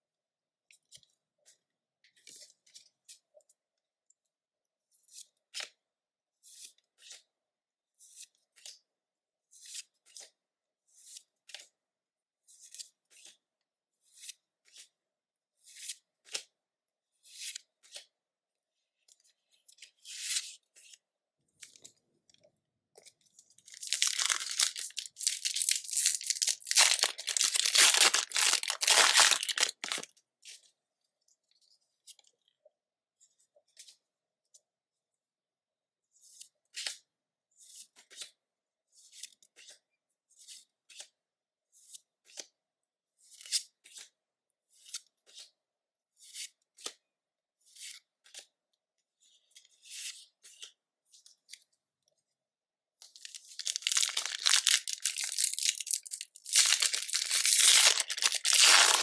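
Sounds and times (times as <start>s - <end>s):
foil wrapper tearing and crinkling: 23.7s - 30.1s, 53.2s - 59.0s.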